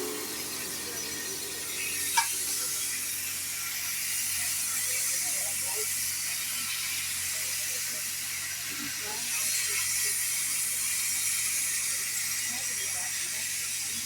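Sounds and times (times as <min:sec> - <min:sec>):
low hum: 0:00.0 - 0:02.9
steady high hiss: 0:00.0 - 0:05.9
faint murmur of voices: 0:00.0 - 0:14.0.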